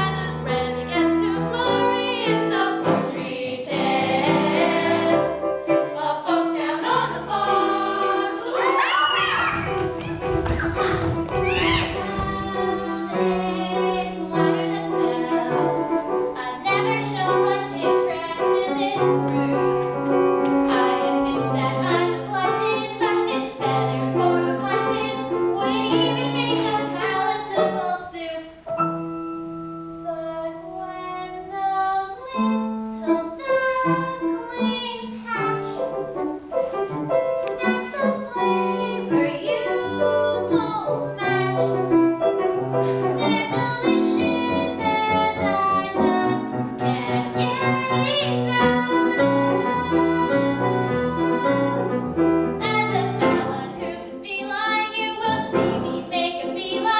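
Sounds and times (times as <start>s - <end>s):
people singing: 0.0s - 10.3s, 10.9s - 20.0s, 42.8s - 54.1s
piano accompaniment: 0.0s - 56.9s.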